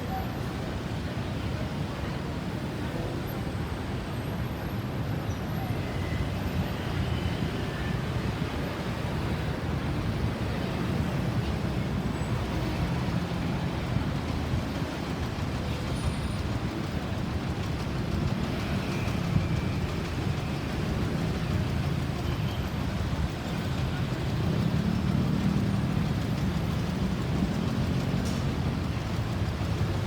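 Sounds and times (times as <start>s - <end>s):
road traffic rumble: 0.0s - 30.0s.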